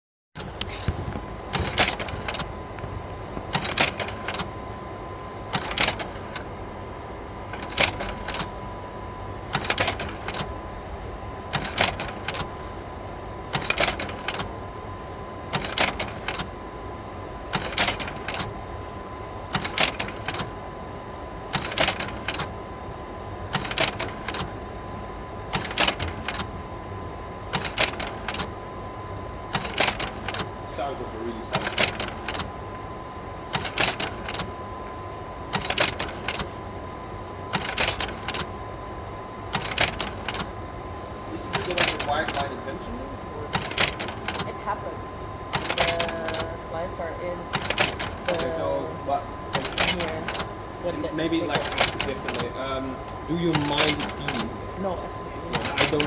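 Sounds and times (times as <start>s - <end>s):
projector cooling fan whirr: 0.4s - 56.0s
slide projector mechanism clacking: 3.5s - 4.5s, 17.6s - 18.5s, 23.6s - 24.6s, 25.6s - 26.5s, 27.6s - 28.6s, 29.6s - 30.6s, 31.5s - 32.5s, 33.6s - 34.5s, 35.6s - 36.6s, 37.6s - 38.5s, 39.6s - 40.5s, 41.6s - 42.6s, 43.6s - 44.5s, 45.6s - 46.5s, 47.6s - 48.6s, 49.5s - 50.5s, 51.5s - 52.5s, 53.5s - 54.5s, 55.5s - 56.0s.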